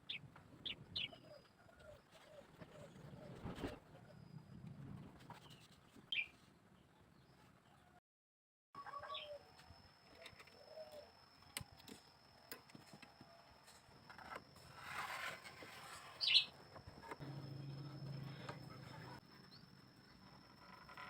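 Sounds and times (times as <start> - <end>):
bird chirping: 0.0 - 3.4, 8.8 - 12.6, 16.2 - 20.5.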